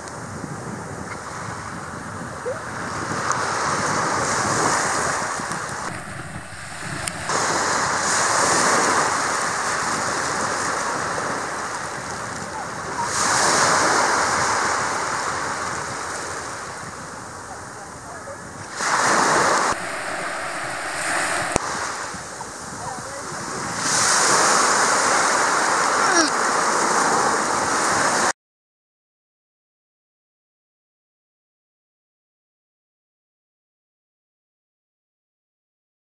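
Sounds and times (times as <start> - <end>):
wind buffeting microphone: 0.2 - 12.3, 18.5 - 23.9
sea waves breaking on shore: 2.9 - 12.1, 18.6 - 28.3.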